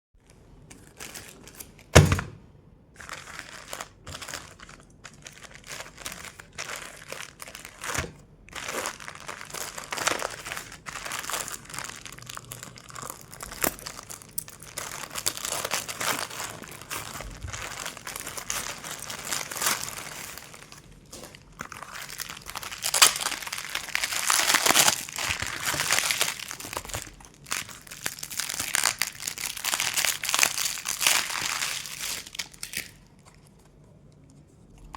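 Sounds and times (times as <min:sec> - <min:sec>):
packaging crinkling and rustling: 0:00.2 - 0:02.0, 0:02.9 - 0:34.9.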